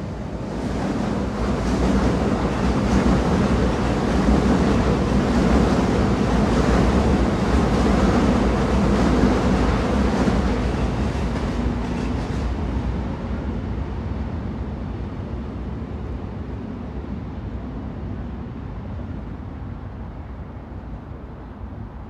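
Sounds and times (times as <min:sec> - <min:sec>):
train rumbling with rattling hiss: 0:00.0 - 0:22.0.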